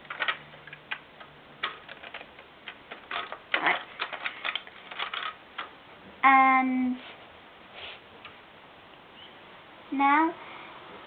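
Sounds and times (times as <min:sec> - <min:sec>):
plastic bricks clicking and rattling: 0:00.0 - 0:05.8.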